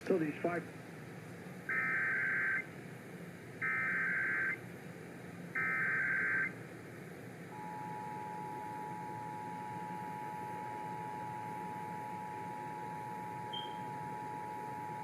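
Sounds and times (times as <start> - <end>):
radio hiss and hum: 0.0 - 0.7
two-tone attention signal: 7.6 - 15.0.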